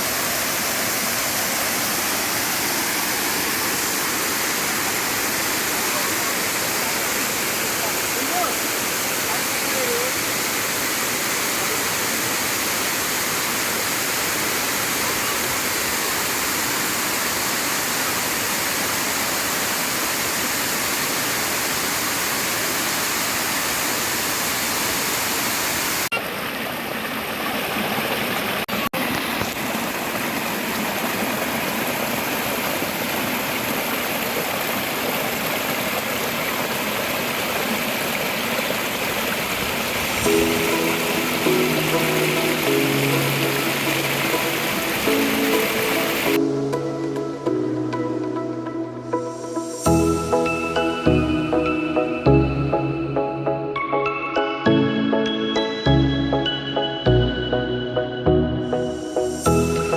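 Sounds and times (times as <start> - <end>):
water rushing over waterfall: 0.0 - 46.4.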